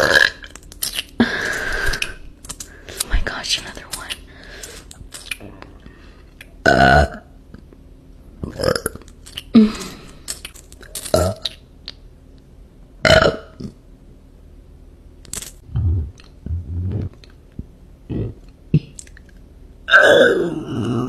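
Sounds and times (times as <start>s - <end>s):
woman burping: 19.9s - 21.0s.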